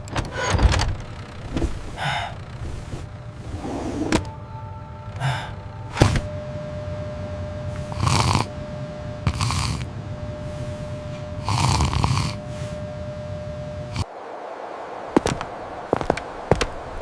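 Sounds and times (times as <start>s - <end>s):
faint steady tone: 0.0s - 17.0s
person snoring: 7.7s - 8.6s, 9.2s - 13.1s.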